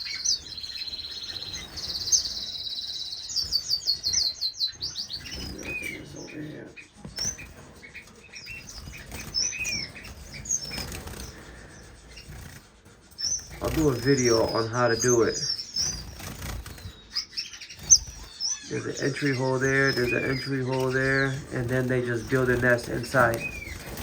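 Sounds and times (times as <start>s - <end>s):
finches chirping: 0.0s - 24.0s
wings fluttering: 5.0s - 6.3s, 6.9s - 24.0s.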